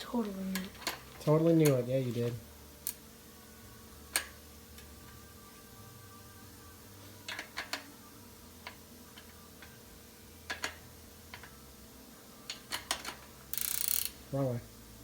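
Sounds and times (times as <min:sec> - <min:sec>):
wrench clicking: 0:12.5 - 0:14.2.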